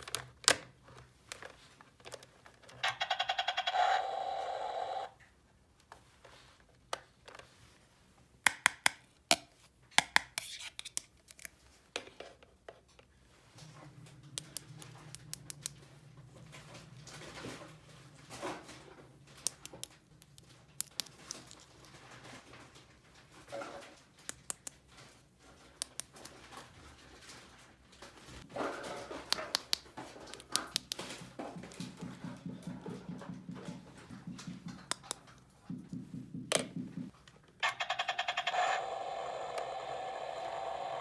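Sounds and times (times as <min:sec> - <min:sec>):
plastic toy pieces clicking: 0:01.3 - 0:04.4, 0:19.4 - 0:21.7, 0:37.6 - 0:40.7.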